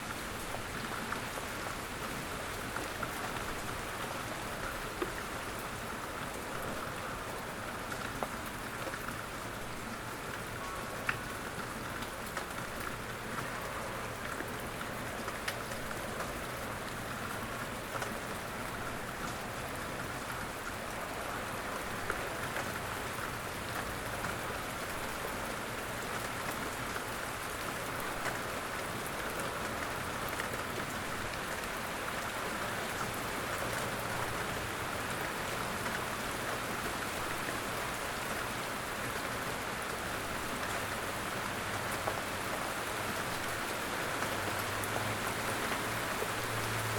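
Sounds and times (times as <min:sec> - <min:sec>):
steady rain hiss: 0:00.0 - 0:46.9
raindrop ticks: 0:10.4 - 0:13.6, 0:14.2 - 0:18.5.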